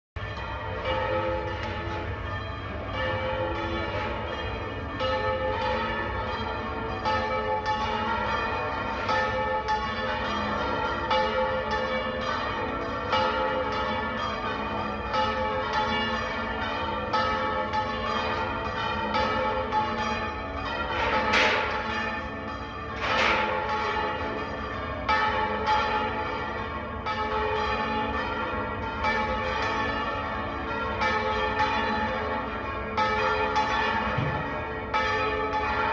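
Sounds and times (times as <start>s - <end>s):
church bells pealing: 0.2s - 35.9s
loud sharp bell clangs: 17.1s - 26.1s, 33.0s - 35.9s.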